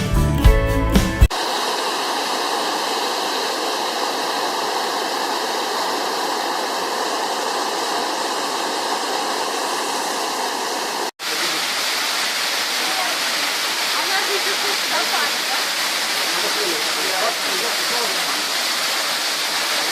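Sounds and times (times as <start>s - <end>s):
waterfall rushing: 1.3s - 19.9s.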